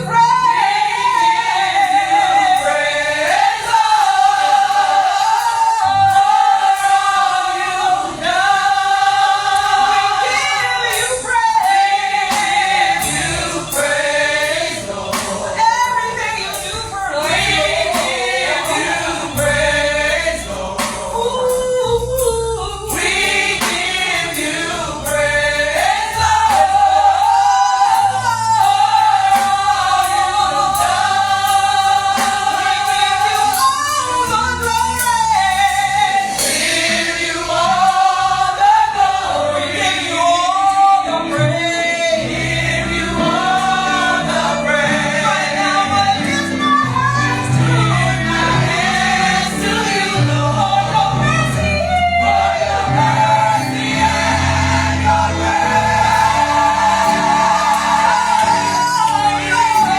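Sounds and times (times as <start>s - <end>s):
gospel choir singing: 0.0s - 59.9s
band playing bass and drums: 10.9s - 39.9s.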